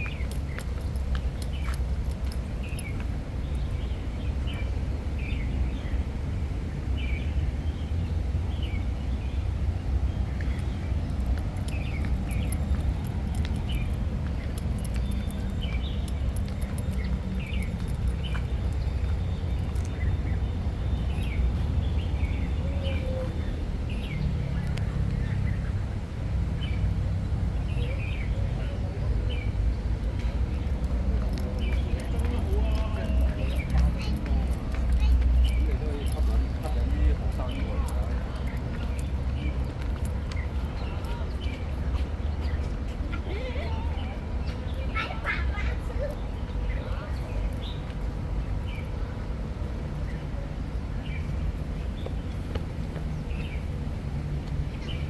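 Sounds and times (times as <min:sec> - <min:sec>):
birds chirping: 0:00.0 - 0:06.1, 0:07.0 - 0:55.0
steady low rumble: 0:00.0 - 0:22.7.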